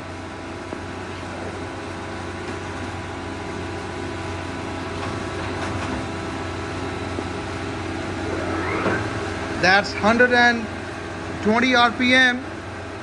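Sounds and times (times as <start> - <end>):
lathe motor humming: 3.0 - 13.0.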